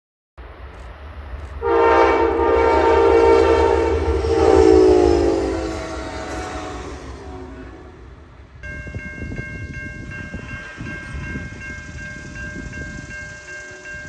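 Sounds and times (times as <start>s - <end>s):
low rumble: 0.4s - 10.3s
locomotive air horn blast: 1.6s - 8.4s.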